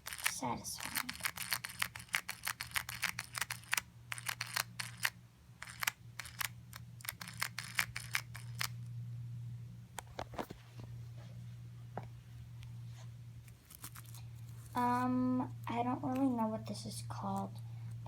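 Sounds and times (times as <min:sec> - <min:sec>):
fidget clicker toy clicking: 0:00.0 - 0:08.7.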